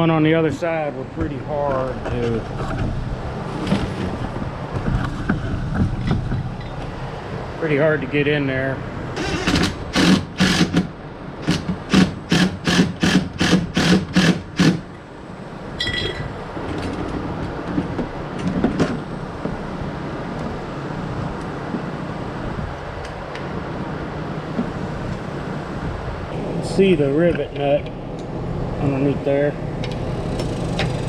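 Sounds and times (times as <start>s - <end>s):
steady low hum: 0.0s - 31.0s
sharp metallic strikes: 15.8s - 16.4s.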